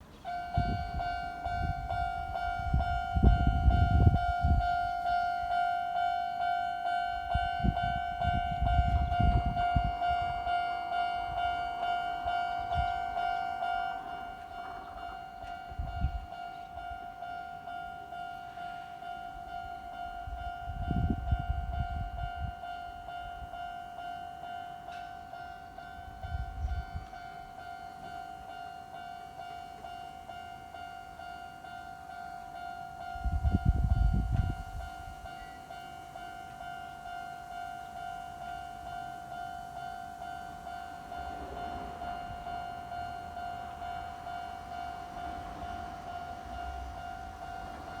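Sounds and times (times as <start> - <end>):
passing train rumble: 0.0 - 48.0
level crossing bell ringing: 0.3 - 26.2.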